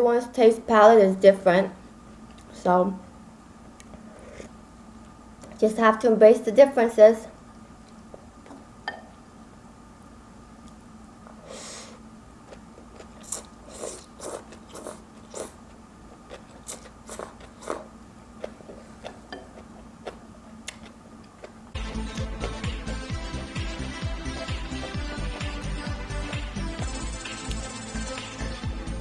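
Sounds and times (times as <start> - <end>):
faint steady hum: 0.0 - 29.0
soft chewing and mouth clicks: 12.4 - 21.6.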